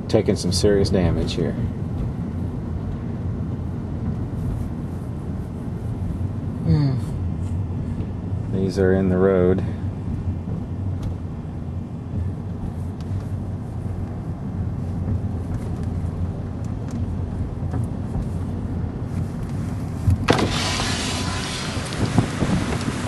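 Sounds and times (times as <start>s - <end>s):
car cabin road and engine rumble: 0.0s - 23.0s
rushing wind noise: 9.8s - 23.0s.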